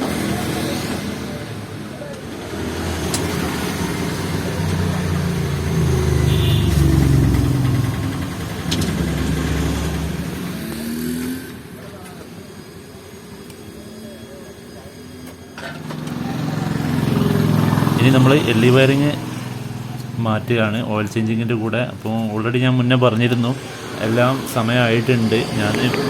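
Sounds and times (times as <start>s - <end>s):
motor vehicle passing by: 2.4s - 12.2s, 15.6s - 26.0s.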